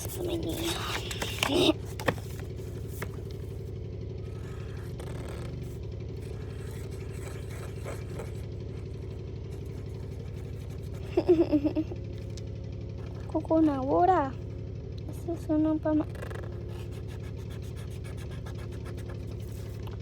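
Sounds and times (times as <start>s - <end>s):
faint taps and scrapes: 0.0s - 3.5s
low motor hum: 0.0s - 20.0s.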